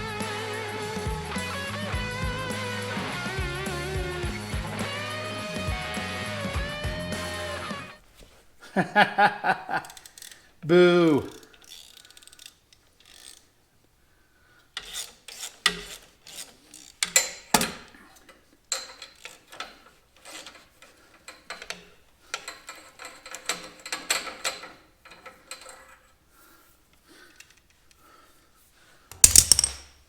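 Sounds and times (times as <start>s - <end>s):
clinks and scrapes of metal parts: 14.8s - 26.2s, 29.1s - 30.0s.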